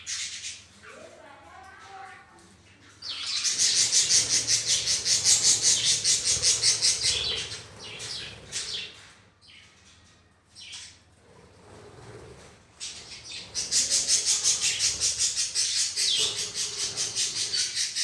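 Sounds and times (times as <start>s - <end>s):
budgerigars chattering: 3.0s - 9.0s, 12.8s - 18.0s.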